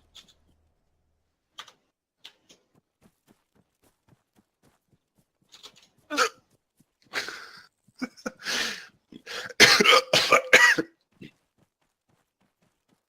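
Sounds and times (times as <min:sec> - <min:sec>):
hiccups: 0:06.1 - 0:06.4
person coughing: 0:06.1 - 0:06.4, 0:07.2 - 0:11.0.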